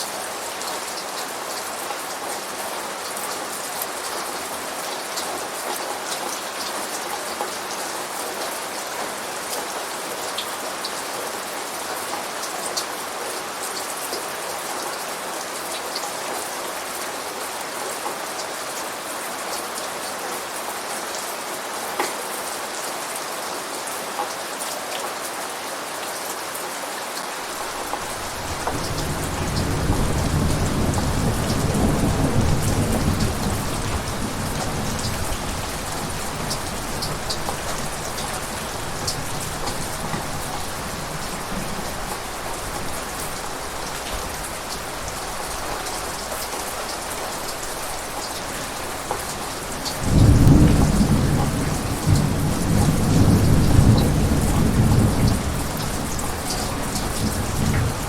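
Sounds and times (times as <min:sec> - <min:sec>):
steady rain pattering: 0:00.0 - 0:58.0
thunder rumbling: 0:27.6 - 0:45.3, 0:48.6 - 0:58.0.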